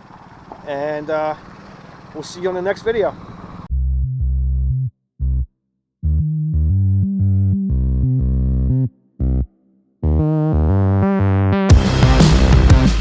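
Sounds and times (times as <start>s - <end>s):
synthesizer riff: 6.1s - 13.0s.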